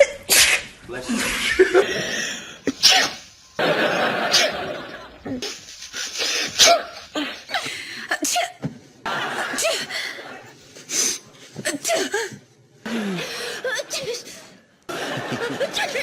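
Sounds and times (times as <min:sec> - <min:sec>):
woman sneezing: 0:00.3 - 0:00.7, 0:02.7 - 0:03.3, 0:06.4 - 0:07.3
laughter: 0:01.2 - 0:02.1, 0:03.6 - 0:05.5, 0:09.0 - 0:10.5, 0:14.9 - 0:16.0.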